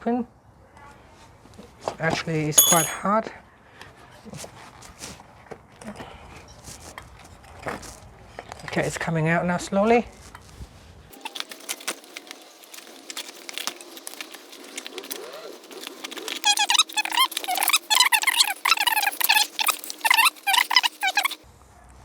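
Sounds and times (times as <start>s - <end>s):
bicycle tyre squeaking against rim: 14.0s - 21.4s.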